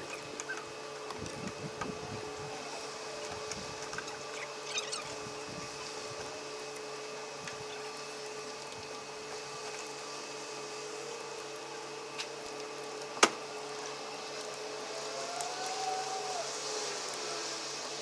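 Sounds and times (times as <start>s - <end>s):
small motor humming: 0.0s - 18.0s.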